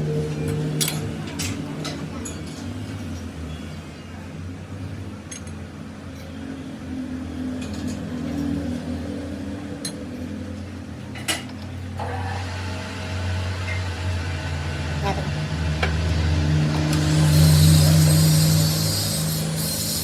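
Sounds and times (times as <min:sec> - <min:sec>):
lathe motor humming: 0:12.0 - 0:20.0.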